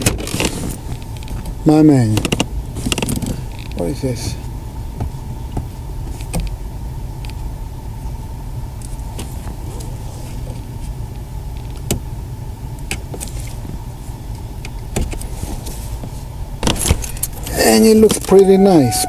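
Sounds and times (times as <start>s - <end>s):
steady low hum: 0.0s - 16.6s.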